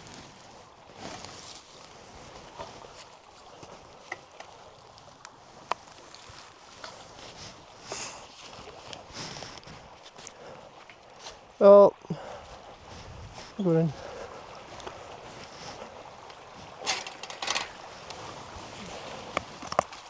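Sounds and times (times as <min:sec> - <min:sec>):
rustling on wire fence: 0:14.6 - 0:20.0.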